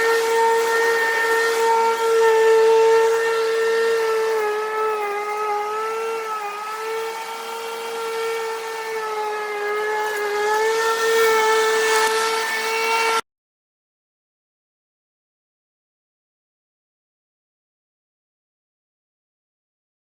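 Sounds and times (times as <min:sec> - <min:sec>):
electric lawnmower motor whine: 0:00.0 - 0:13.2.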